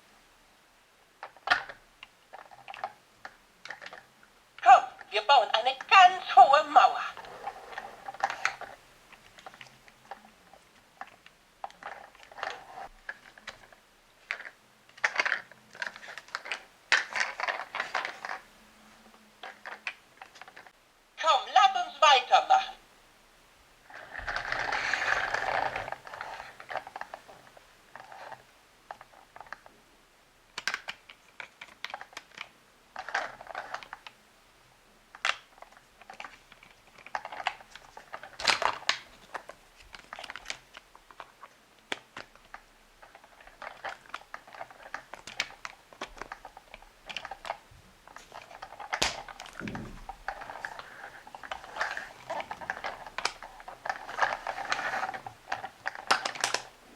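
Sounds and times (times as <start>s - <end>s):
plastic toy pieces clicking: 1.2s - 4.0s, 11.0s - 18.4s, 30.6s - 34.1s, 35.1s - 49.6s, 51.4s - 56.7s
rustling: 7.1s - 20.8s, 23.8s - 29.7s, 35.2s - 56.9s.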